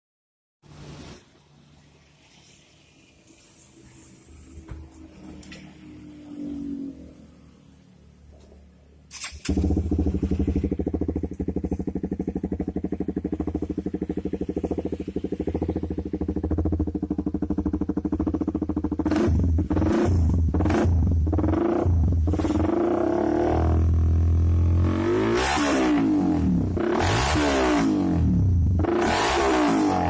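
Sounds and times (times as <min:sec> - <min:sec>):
motorcycle engine idling: 0:09.3 - 0:22.4.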